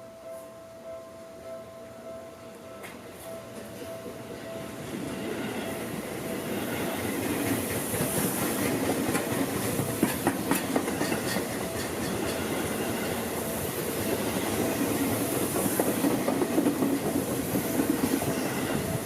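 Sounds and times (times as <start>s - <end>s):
train wheels clacking over rail joints: 7.4s - 13.2s.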